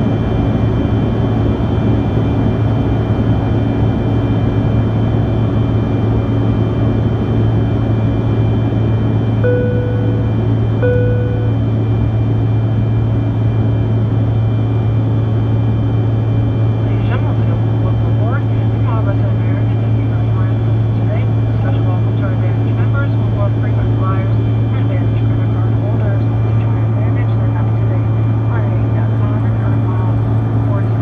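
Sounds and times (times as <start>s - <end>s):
jet cabin drone: 0.0s - 31.0s
cabin chime: 9.4s - 11.5s.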